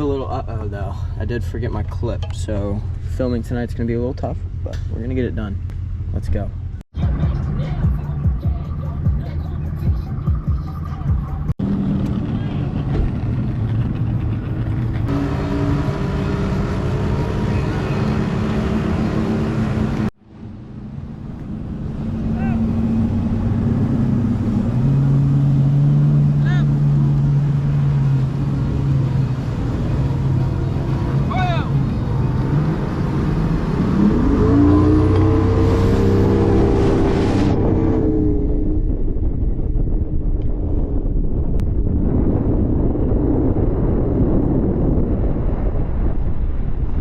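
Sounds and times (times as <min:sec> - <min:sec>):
engine running with low hum: 0:00.3 - 0:47.0
outboard motor revving: 0:21.9 - 0:38.2.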